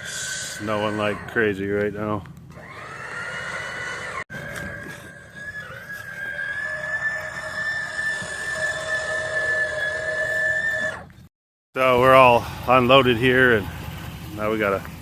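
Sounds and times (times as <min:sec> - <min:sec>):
motor vehicle engine running: 0:11.8 - 0:15.0.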